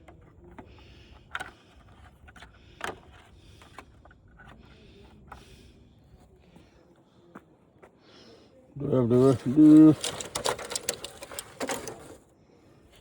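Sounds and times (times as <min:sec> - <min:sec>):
parts being handled and set down: 0:09.2 - 0:12.2.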